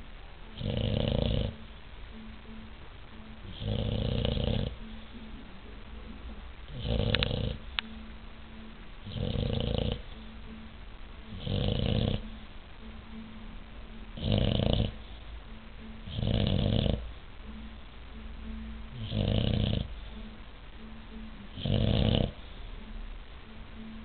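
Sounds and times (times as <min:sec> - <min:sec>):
puppy snoring: 0:00.6 - 0:01.7, 0:03.4 - 0:04.9, 0:06.7 - 0:07.6, 0:09.0 - 0:10.2, 0:11.3 - 0:12.4, 0:14.2 - 0:15.2, 0:16.0 - 0:17.1, 0:18.9 - 0:20.2, 0:21.5 - 0:22.5.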